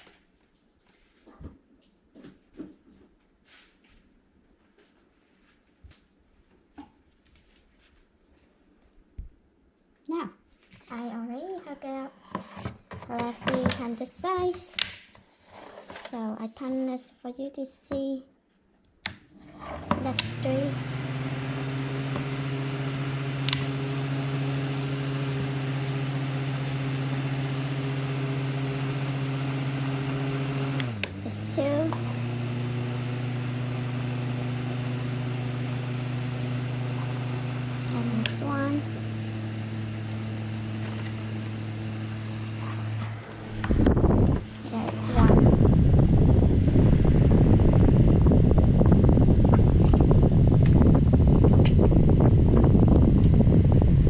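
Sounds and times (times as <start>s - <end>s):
fan humming with rushing air: 19.3s - 54.0s.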